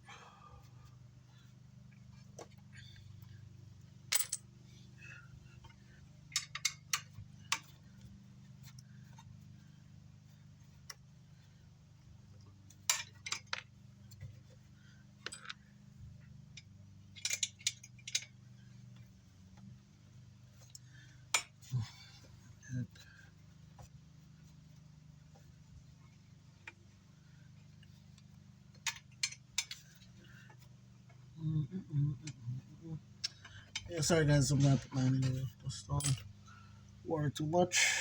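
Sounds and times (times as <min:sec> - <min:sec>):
steady low hum: 0:00.0 - 0:38.0
screws clinking on metal: 0:12.9 - 0:13.6, 0:15.2 - 0:15.6, 0:17.1 - 0:18.3, 0:33.2 - 0:36.3.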